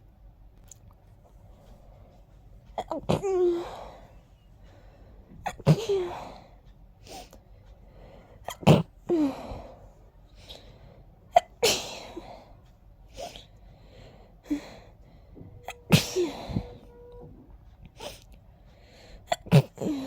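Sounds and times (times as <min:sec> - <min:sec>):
quiet breaths: 0:01.2 - 0:11.3, 0:12.1 - 0:20.0
person sneezing: 0:15.7 - 0:16.9.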